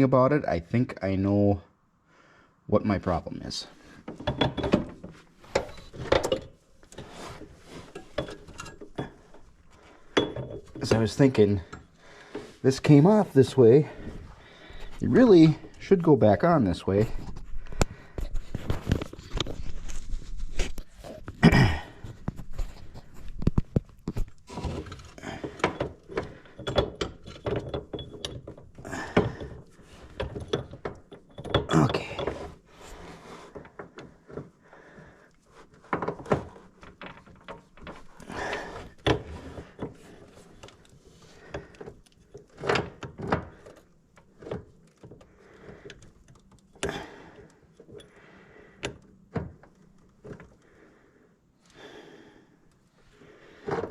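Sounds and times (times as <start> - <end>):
metal parts clinking and knocking: 4.0 - 7.1, 7.7 - 12.0, 23.3 - 32.7, 35.9 - 45.2.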